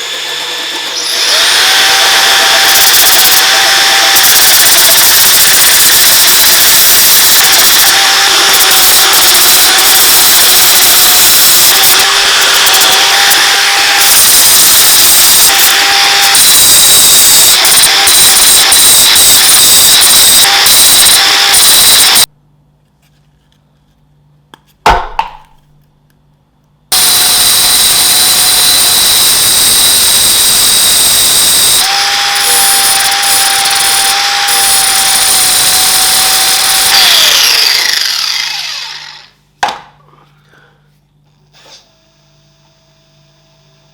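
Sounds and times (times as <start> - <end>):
power tool motor whine: 0.0 - 22.3, 26.9 - 39.3.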